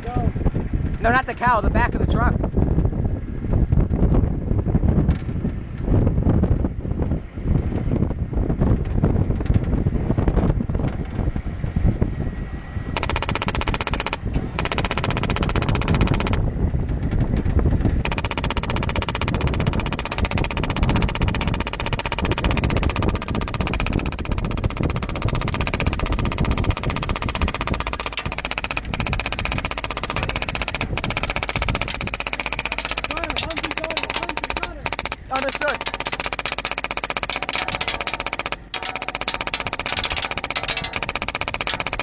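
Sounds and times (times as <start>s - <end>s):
vehicle rumble: 0.0s - 42.0s
airsoft gunfire rattle: 13.0s - 16.5s, 18.0s - 42.0s.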